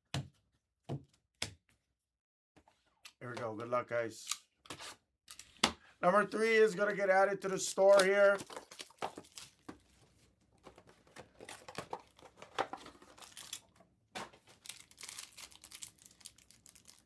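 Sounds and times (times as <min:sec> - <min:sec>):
card wrappers crinkling: 0:07.7 - 0:10.0, 0:10.6 - 0:17.0.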